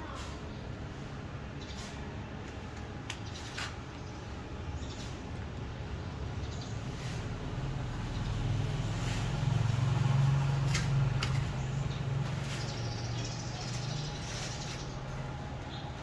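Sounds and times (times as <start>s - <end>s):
low engine hum: 4.2s - 16.0s.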